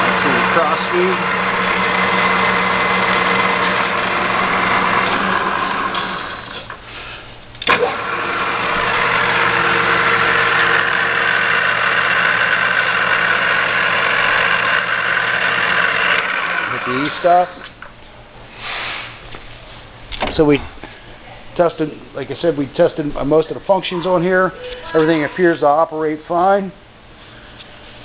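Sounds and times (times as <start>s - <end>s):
lathe gear whine: 0.0s - 6.7s, 7.6s - 17.7s.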